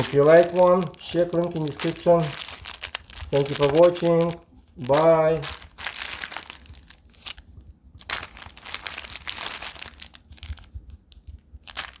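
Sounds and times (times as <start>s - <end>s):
plastic wrappers crinkling: 0.0s - 12.0s.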